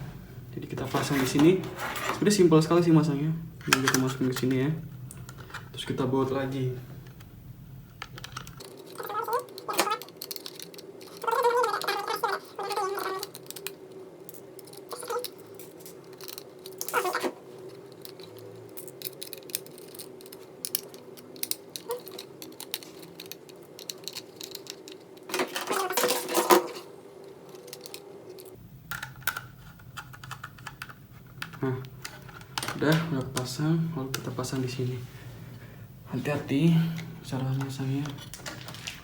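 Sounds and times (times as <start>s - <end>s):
steady low hum: 0.0s - 12.6s, 26.2s - 39.0s
screwdriver clicking on tiny screws: 8.0s - 25.9s.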